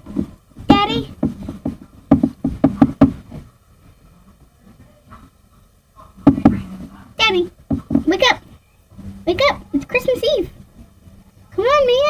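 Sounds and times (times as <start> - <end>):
faint low noise: 0.0 - 12.0
knocks or taps: 0.1 - 3.5, 6.2 - 6.7, 7.7 - 8.6.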